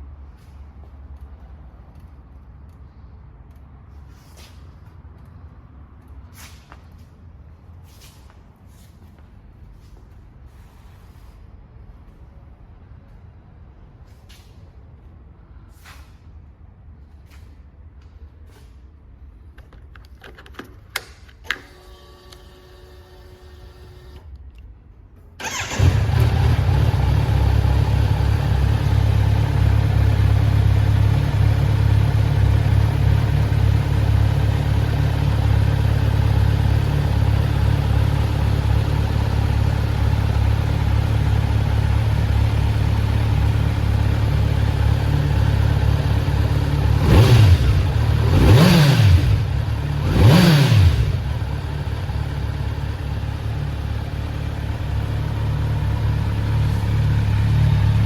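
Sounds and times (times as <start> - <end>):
motorcycle engine idling and revving: 25.4 - 58.0.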